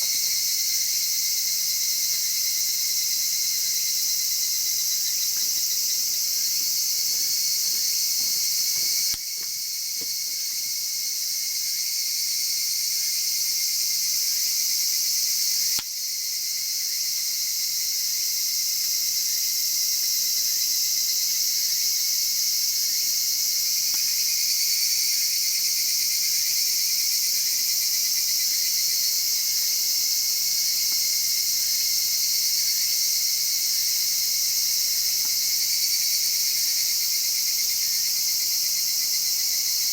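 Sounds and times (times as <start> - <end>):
crickets chirring: 0.0 - 39.9
wood fire crackling: 6.3 - 10.7.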